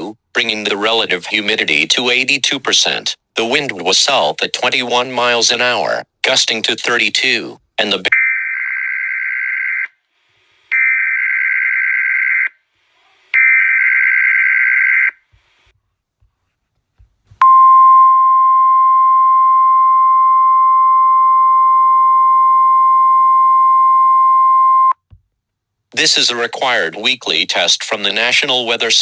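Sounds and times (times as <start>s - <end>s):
steady warning alarm tone: 8.1s - 9.9s, 10.7s - 12.6s, 13.3s - 15.2s.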